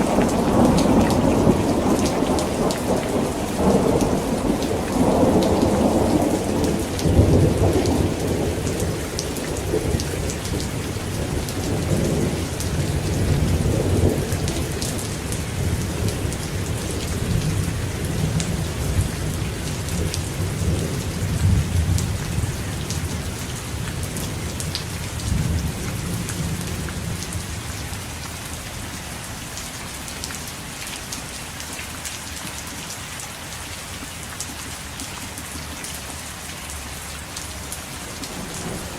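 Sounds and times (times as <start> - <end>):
low rumble of thunder: 0.0 - 28.0, 38.1 - 38.9
steady rain falling: 0.0 - 38.9.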